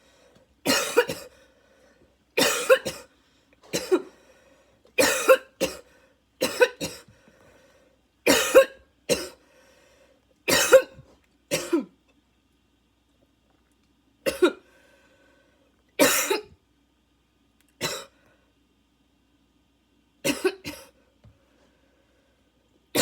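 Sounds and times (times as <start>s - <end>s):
girl coughing harshly: 0.6s - 1.3s, 2.4s - 3.1s, 3.7s - 4.1s, 5.0s - 7.1s, 8.3s - 9.4s, 10.5s - 11.9s, 14.3s - 14.6s, 16.0s - 16.5s, 17.8s - 18.1s, 20.2s - 21.0s.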